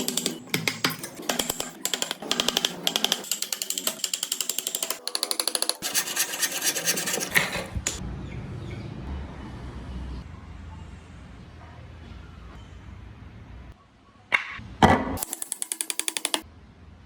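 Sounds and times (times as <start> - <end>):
hand saw cutting wood: 5.6 - 8.0.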